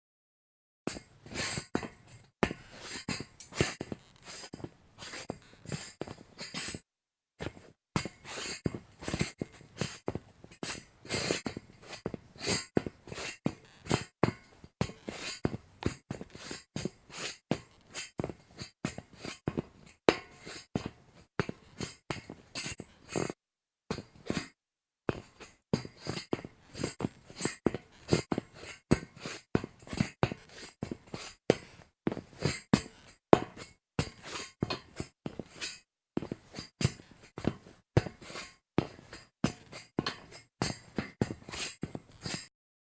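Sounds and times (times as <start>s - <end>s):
footsteps on metal grate: 1.7s - 6.6s, 25.1s - 42.5s.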